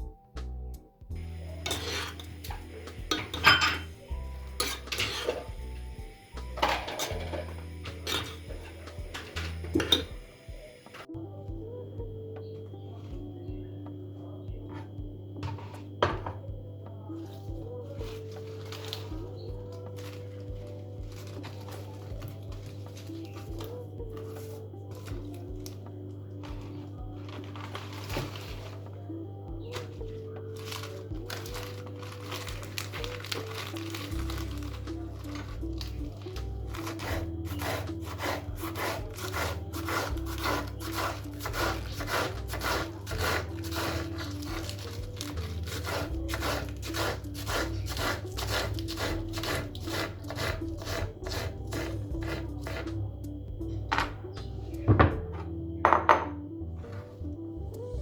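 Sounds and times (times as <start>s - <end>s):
background music with steady beat: 0.0s - 58.0s
rasping scraping strokes: 1.6s - 5.6s, 33.1s - 53.0s.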